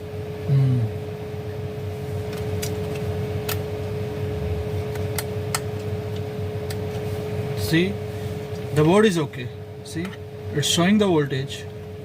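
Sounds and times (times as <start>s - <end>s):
steady hum: 0.0s - 12.0s
low voice murmur: 0.5s - 1.0s.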